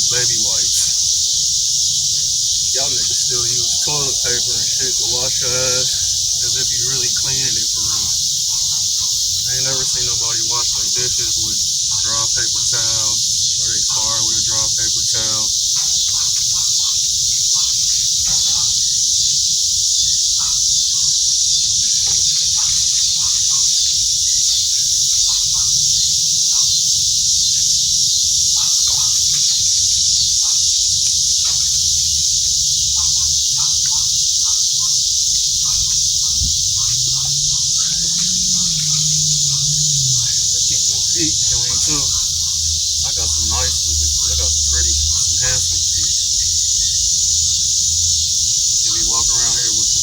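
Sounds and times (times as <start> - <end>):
insect chorus: 0.0 - 50.0.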